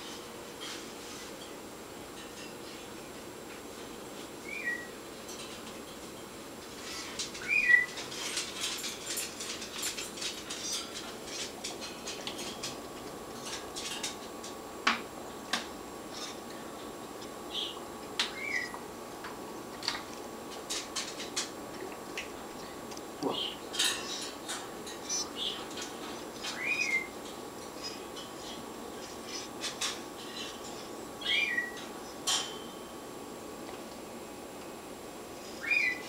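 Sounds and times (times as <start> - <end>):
small birds chirping: 4.4 - 5.0, 6.9 - 8.0, 17.5 - 18.8, 22.6 - 24.3, 25.0 - 25.8, 26.4 - 27.2, 27.8 - 32.2, 35.6 - 36.0.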